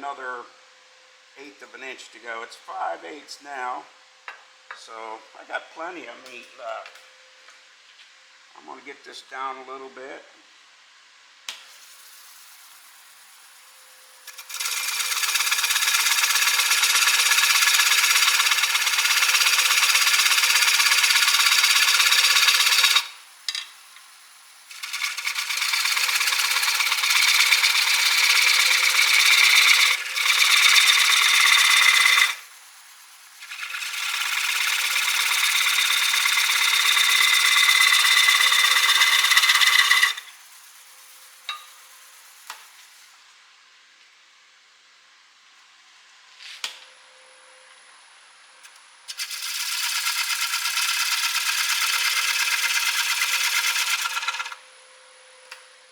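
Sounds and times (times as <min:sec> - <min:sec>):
lathe humming: 0:11.8 - 0:43.0, 0:49.2 - 0:54.6
gouge shaving wood on lathe: 0:14.3 - 0:43.0, 0:49.1 - 0:54.6.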